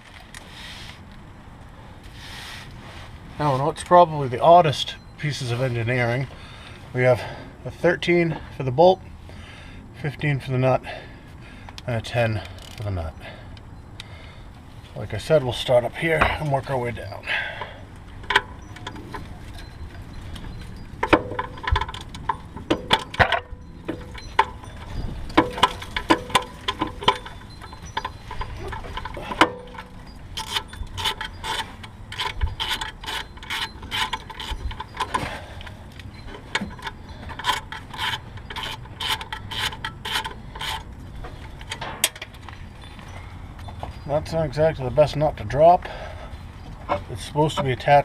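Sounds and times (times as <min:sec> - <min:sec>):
ratchet wrench clicking: 0:12.5 - 0:12.9, 0:25.4 - 0:35.7, 0:36.5 - 0:40.9.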